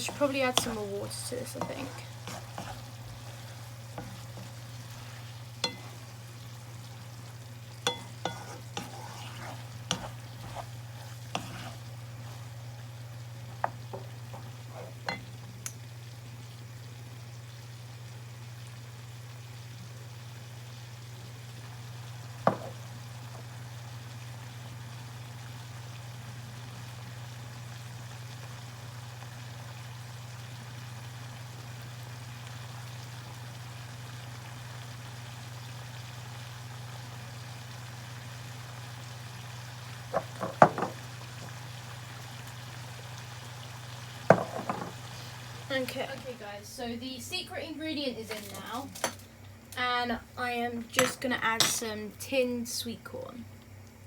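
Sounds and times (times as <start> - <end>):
meat cooking in a pan: 0.0 - 52.5
spoon knocking against pan: 22.4 - 22.8, 40.1 - 41.0, 44.3 - 45.0.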